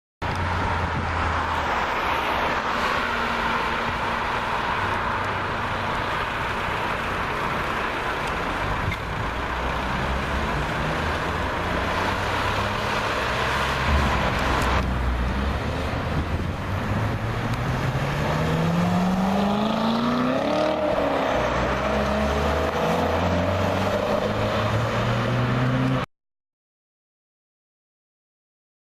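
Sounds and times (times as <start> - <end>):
car engine rumbling and revving: 0.2 - 26.1.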